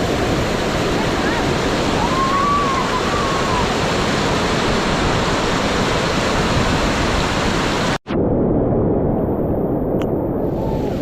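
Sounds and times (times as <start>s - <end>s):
floodwater rushing: 0.0s - 8.0s.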